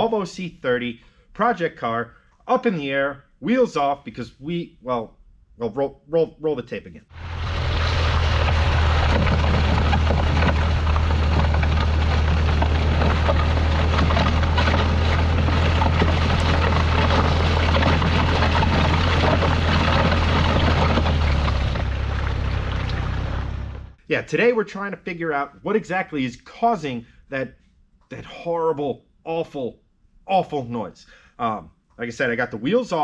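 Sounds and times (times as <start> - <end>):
rushing noise: 7.2 - 23.9
car low rumble: 7.2 - 24.0.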